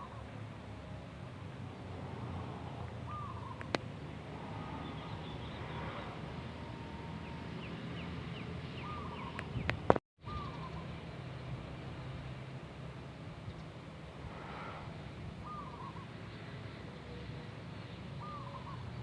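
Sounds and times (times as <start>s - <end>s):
dove cooing: 3.1s - 3.8s, 8.8s - 9.4s, 15.4s - 16.0s, 18.2s - 18.9s.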